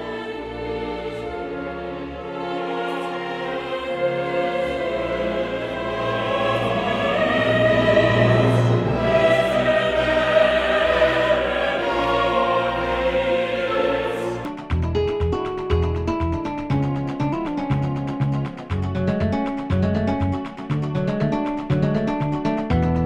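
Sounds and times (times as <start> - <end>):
operatic choir with orchestra: 0.0 - 14.6.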